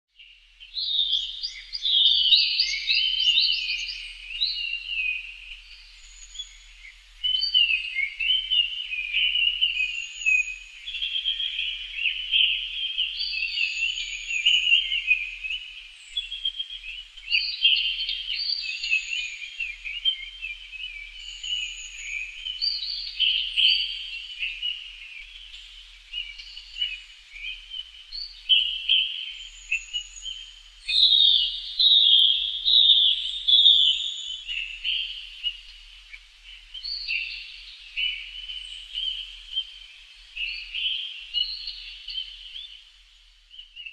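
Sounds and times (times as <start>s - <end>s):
songbirds chorus: 0.1s - 43.9s.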